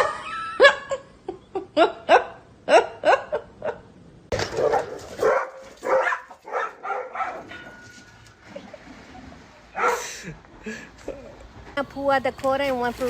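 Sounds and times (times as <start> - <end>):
dog barking and yipping: 4.4 - 7.6, 9.8 - 10.0.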